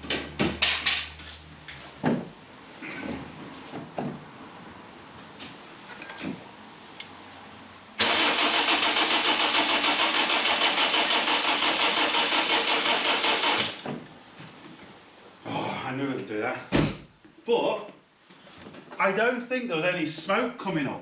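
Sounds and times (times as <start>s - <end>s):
starter motor cranking engine: 8.0s - 13.8s.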